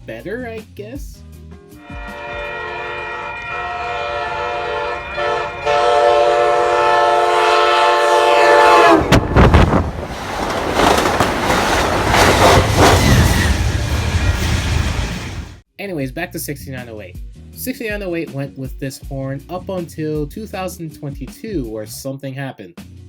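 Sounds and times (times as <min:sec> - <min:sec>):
train air horn chord: 0:01.7 - 0:09.2
passing train rush and rail clatter: 0:01.8 - 0:15.6.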